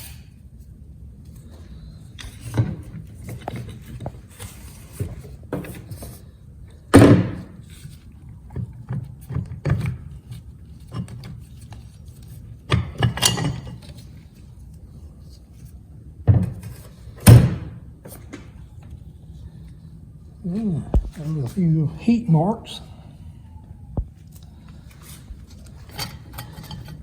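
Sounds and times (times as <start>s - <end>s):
metal parts clinking and knocking: 12.8s - 14.0s, 25.5s - 27.0s.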